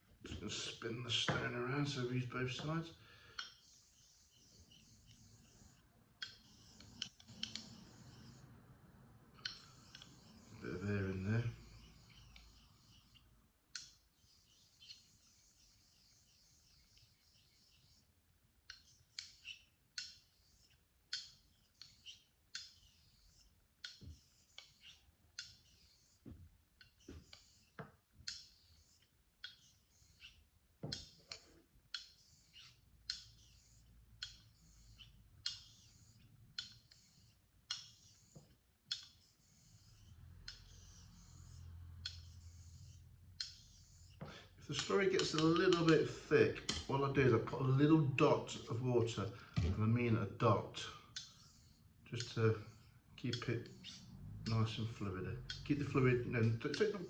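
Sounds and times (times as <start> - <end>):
straight razor scraping on whetstone: 0.5 - 8.5, 9.4 - 46.9.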